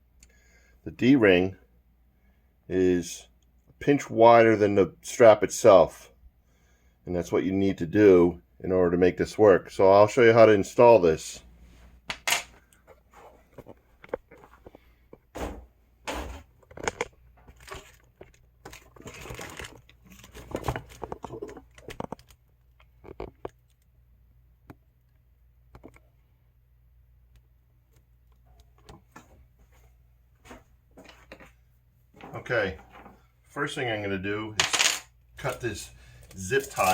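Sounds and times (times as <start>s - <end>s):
handling knocks and clicks: 12.1s - 23.8s.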